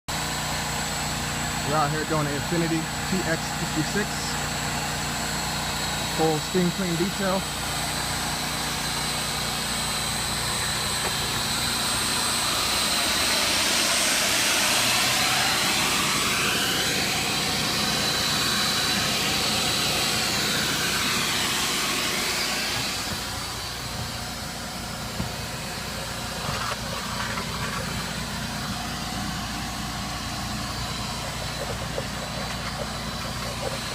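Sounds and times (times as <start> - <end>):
motor hum with high whine: 0.1 - 33.9
steam spraying hiss: 7.3 - 27.2.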